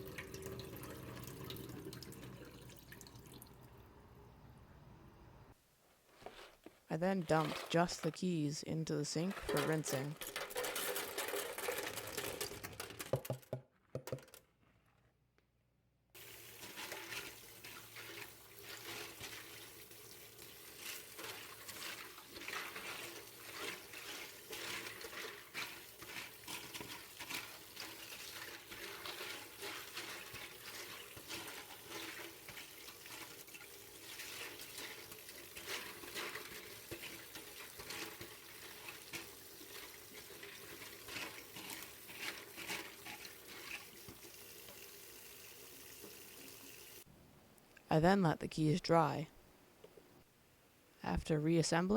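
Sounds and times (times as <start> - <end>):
tap water running into sink: 0.0 - 3.8, 16.2 - 47.1
plastic keycaps clattering: 9.3 - 14.5.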